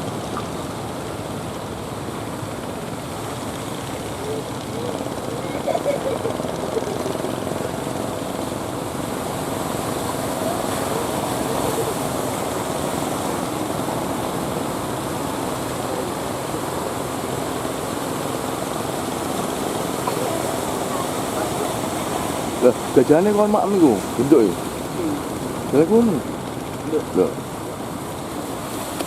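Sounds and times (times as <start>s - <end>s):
boat engines droning: 0.0s - 29.0s
heavy surf breaking: 0.0s - 29.0s
faint distant voices: 3.3s - 27.8s.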